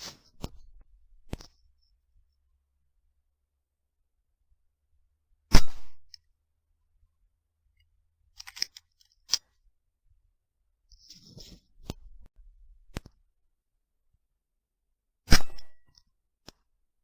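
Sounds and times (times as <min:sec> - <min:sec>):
rifle shot: 0:05.5 - 0:06.0.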